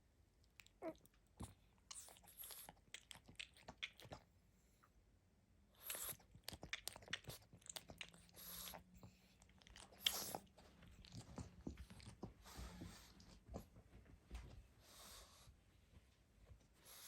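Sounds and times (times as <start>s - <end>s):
dog breathing noisily: 8.2s - 13.8s.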